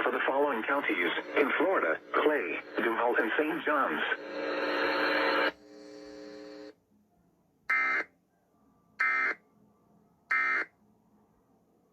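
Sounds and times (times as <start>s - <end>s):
electronic data bursts: 0.0s - 6.7s.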